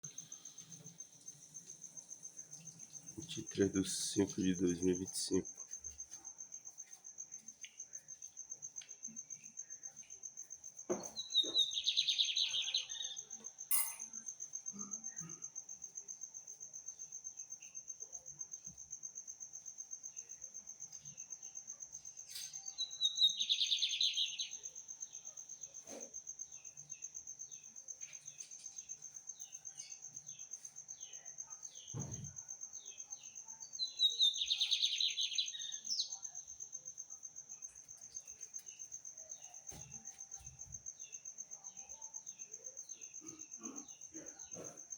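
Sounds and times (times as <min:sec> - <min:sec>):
insect high-pitched trill: 0:00.0 - 0:44.9
bird song with buzzy trill: 0:11.0 - 0:14.2, 0:22.2 - 0:25.4, 0:32.8 - 0:36.5.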